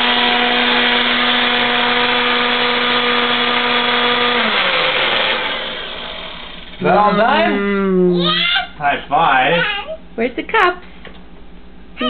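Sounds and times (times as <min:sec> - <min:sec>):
blender motor whine: 0:00.0 - 0:07.6.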